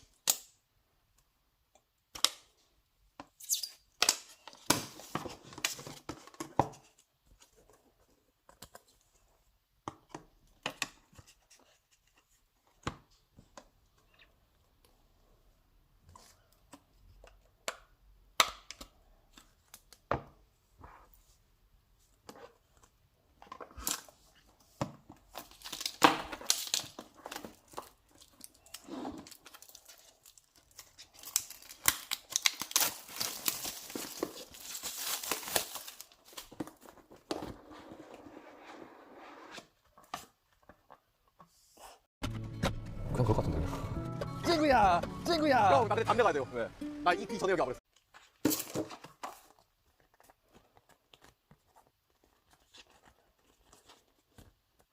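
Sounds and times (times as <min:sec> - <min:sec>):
packaging tearing and crinkling: 0:25.4 - 0:36.5.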